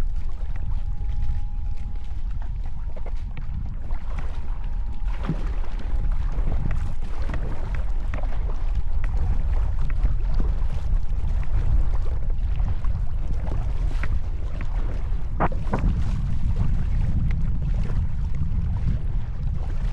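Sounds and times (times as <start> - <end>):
paddle splashing water: 0.0 - 19.9
wind buffeting microphone: 0.0 - 19.9.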